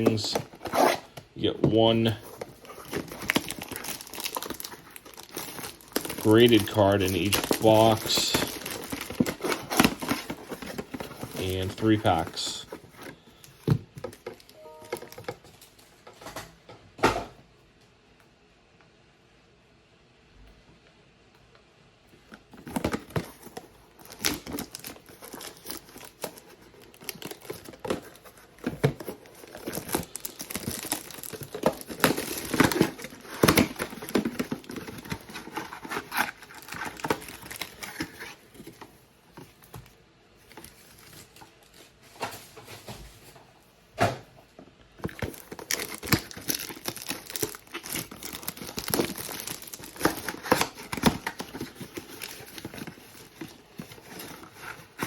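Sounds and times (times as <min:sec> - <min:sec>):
wrapping crinkling and tearing: 0:00.0 - 0:15.8, 0:22.5 - 0:39.8, 0:45.0 - 0:55.0
cardboard rustling and tapping: 0:07.3 - 0:11.6, 0:22.5 - 0:39.9, 0:45.0 - 0:55.0.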